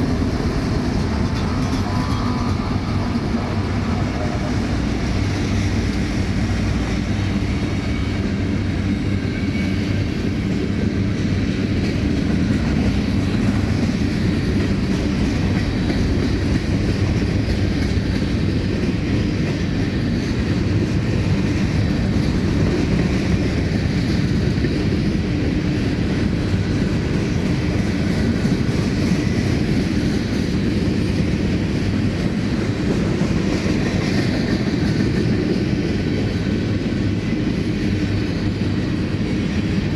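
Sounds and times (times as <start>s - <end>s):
freight train wheels on rails: 0.0s - 39.9s.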